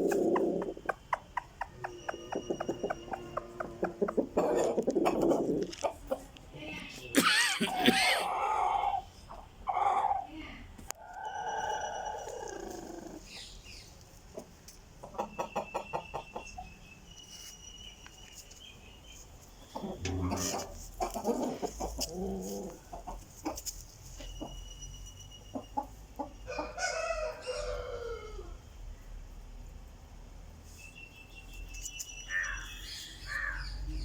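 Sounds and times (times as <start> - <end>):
rooster clucking and calling: 0.0 - 6.3, 7.3 - 10.3, 19.8 - 23.7.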